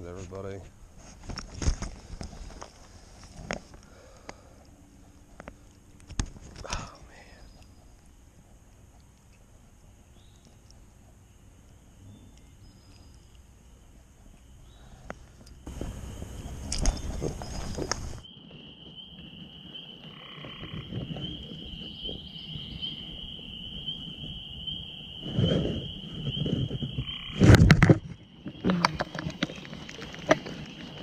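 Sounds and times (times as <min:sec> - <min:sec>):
rustling: 0:00.0 - 0:06.8, 0:14.0 - 0:21.9, 0:25.2 - 0:31.0
frog trilling: 0:15.6 - 0:31.0.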